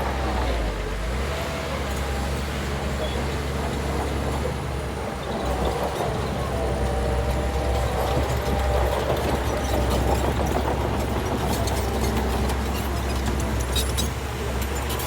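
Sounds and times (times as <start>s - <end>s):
bulldozer diesel engine running: 0.0s - 15.0s.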